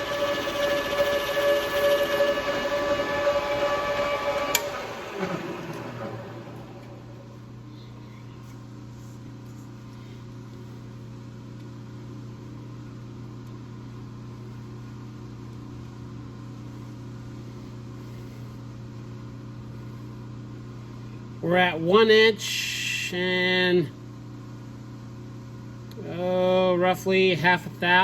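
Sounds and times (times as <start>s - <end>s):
lathe motor humming: 0.0s - 7.7s.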